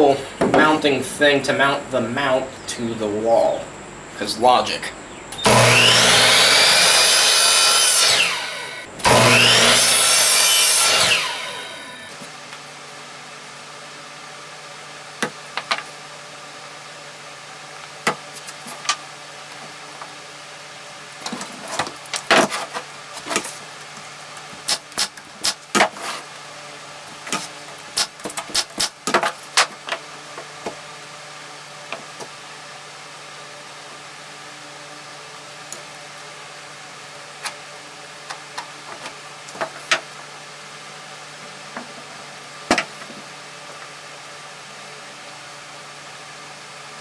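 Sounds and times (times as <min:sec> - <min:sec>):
steady low hum: 0:00.0 - 0:07.6, 0:08.2 - 0:10.1.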